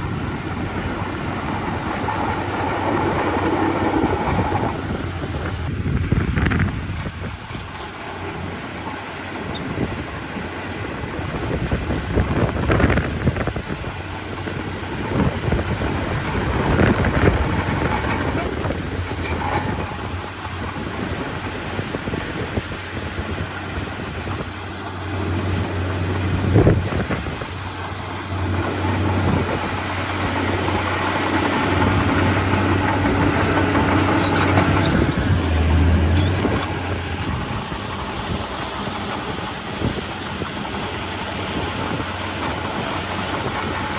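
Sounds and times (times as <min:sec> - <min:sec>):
diesel machinery engine drone: 0:00.0 - 0:43.9
sharp metal clanks: 0:17.7 - 0:20.7.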